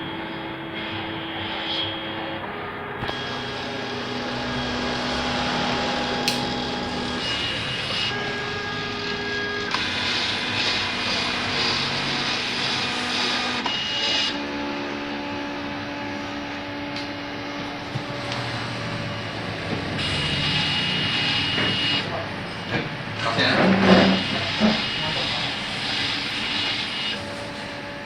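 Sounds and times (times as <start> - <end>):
plotter motors whining: 0.0 - 28.0
sharp click: 6.2 - 6.5
mechanical hiss: 23.2 - 28.0.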